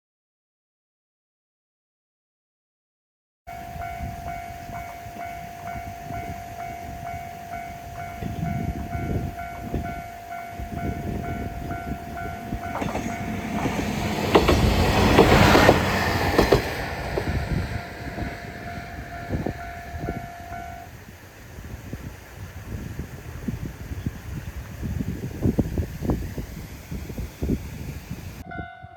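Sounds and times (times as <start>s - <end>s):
level crossing warning bell: 3.5s - 20.9s, 28.4s - 28.9s
train wheels clattering: 4.0s - 20.8s.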